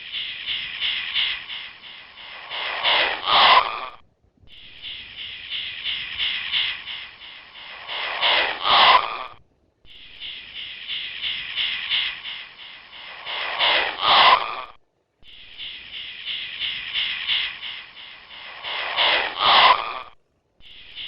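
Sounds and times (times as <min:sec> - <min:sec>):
harsh rasping animal calls: 0:00.0 - 0:04.0, 0:04.8 - 0:09.4, 0:10.2 - 0:14.8, 0:15.6 - 0:20.2.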